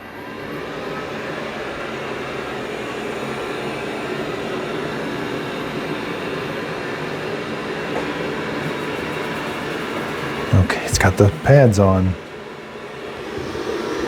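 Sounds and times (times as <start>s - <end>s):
robot vacuum humming: 7.7s - 12.1s, 12.9s - 14.0s.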